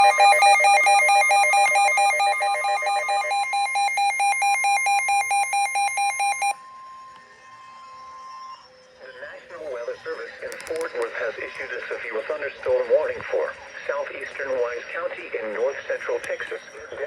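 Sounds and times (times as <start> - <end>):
fast electronic beeping: 0.0 - 6.6
steady high alert tone: 0.0 - 6.6.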